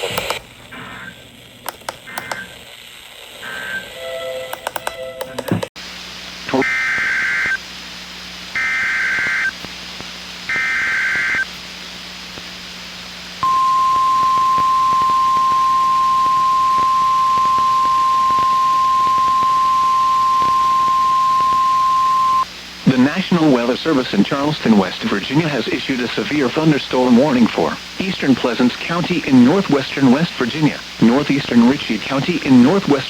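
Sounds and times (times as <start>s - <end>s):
steady warning alarm tone: 13.4s - 22.4s
warbling data tone bursts: 13.4s - 22.5s.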